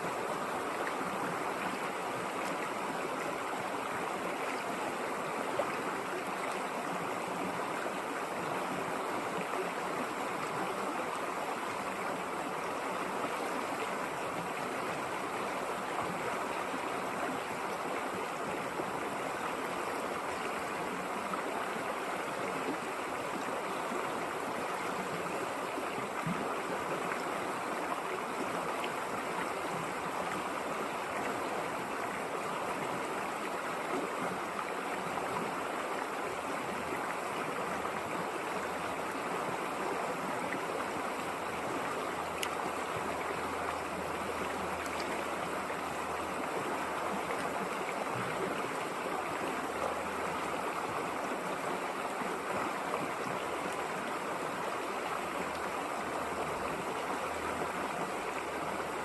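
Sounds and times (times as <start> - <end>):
river water rushing over rocks: 0.0 - 59.0.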